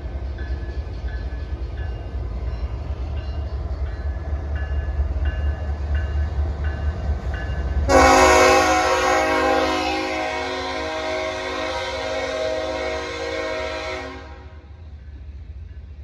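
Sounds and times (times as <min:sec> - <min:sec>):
diesel locomotives rumbling: 0:00.0 - 0:16.0
locomotive horn blast: 0:07.9 - 0:14.6.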